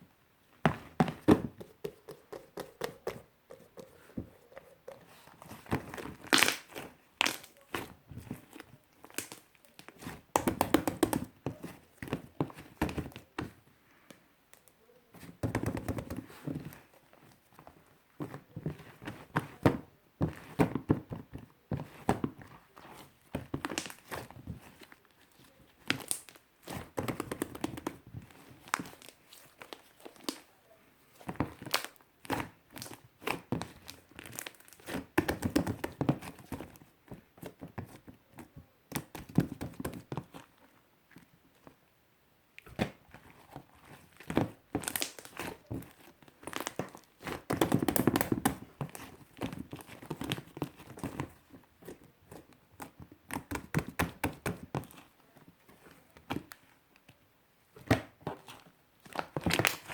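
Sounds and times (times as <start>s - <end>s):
slime crackling and popping: 5.6s - 7.8s, 8.4s - 11.2s, 23.5s - 24.9s, 25.8s - 30.5s, 31.5s - 36.0s, 44.1s - 51.1s, 57.9s - 59.9s.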